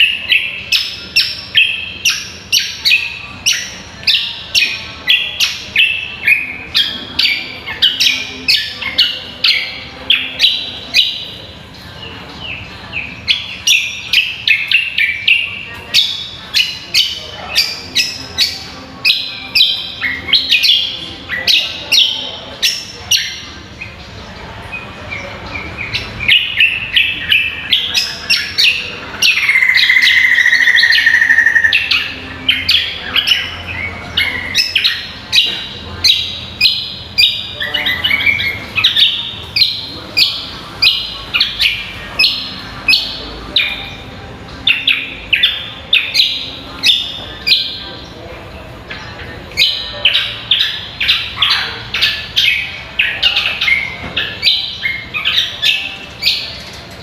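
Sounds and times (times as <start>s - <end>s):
bird singing whistled notes: 25.8s - 44.0s.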